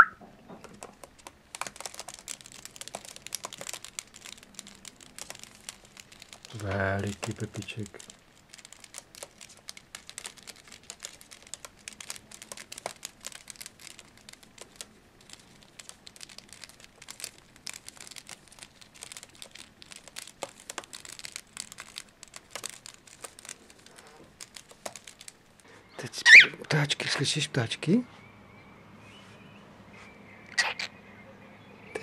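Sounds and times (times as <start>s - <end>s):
crinkling and crackling clicks: 0.0s - 27.5s.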